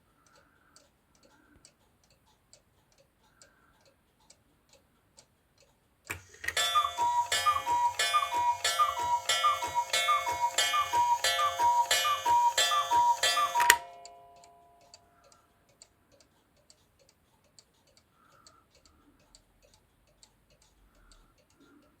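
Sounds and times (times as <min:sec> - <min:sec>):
clock mechanism whirring: 0:06.1 - 0:14.6
cuckoo clock calls: 0:06.1 - 0:14.7
clock ticking: 0:06.1 - 0:22.0.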